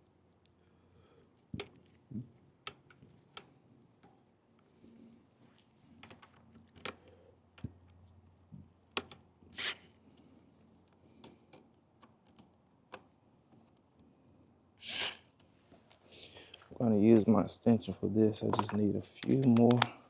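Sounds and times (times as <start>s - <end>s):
short scrape: 9.6s - 9.9s, 14.8s - 15.3s.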